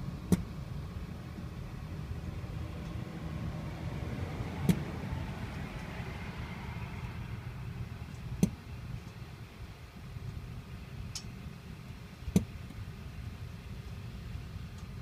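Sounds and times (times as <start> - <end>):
steady low rumble: 0.0 - 15.0
engine bangs: 2.0 - 9.0.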